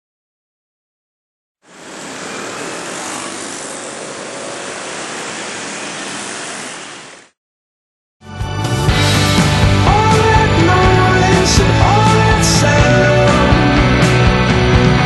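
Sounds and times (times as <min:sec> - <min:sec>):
steady rushing noise: 0:01.6 - 0:07.4.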